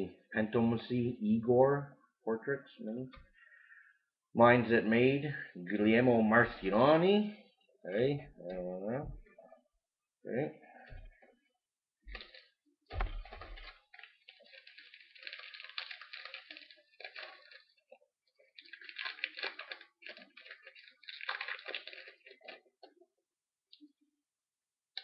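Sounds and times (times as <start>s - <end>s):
card packs crinkling and rustling: 12.1s - 23.0s.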